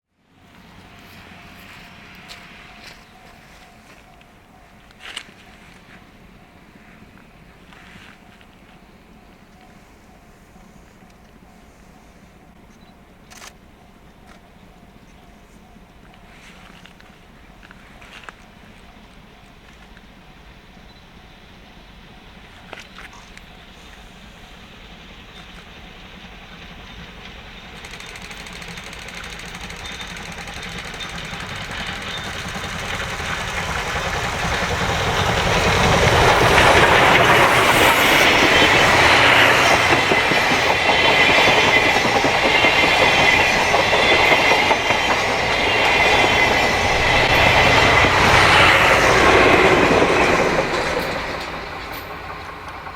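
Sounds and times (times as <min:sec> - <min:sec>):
steam locomotive working hard: 0:00.2 - 0:52.9
steady high tone: 0:00.8 - 0:07.5, 0:30.0 - 0:52.9
wheels clattering over rails: 0:27.7 - 0:52.9.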